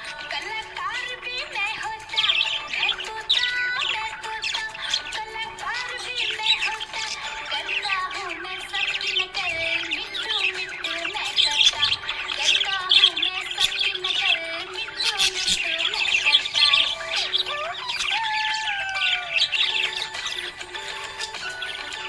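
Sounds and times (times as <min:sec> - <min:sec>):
budgerigars chirping and warbling: 0:00.0 - 0:22.0
budgerigar squawks: 0:01.5 - 0:22.0.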